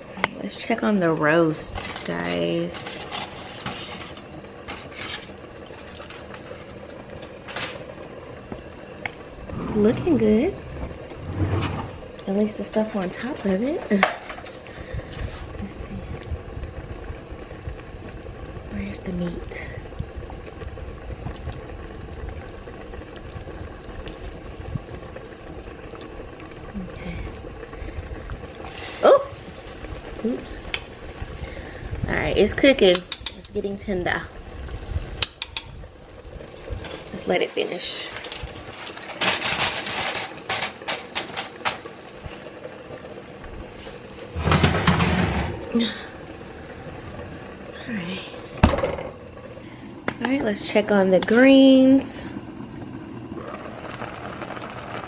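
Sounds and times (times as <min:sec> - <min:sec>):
liquid simmering and bubbling: 0:00.0 - 0:55.0
cookware scraping and clattering: 0:09.6 - 0:12.1, 0:44.4 - 0:45.6.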